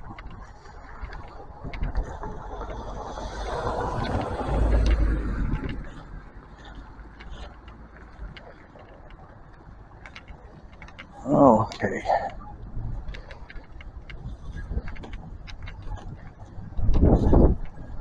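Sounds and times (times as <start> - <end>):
vehicle passing by: 2.4 - 6.4
handling noise clicks: 4.0 - 18.0.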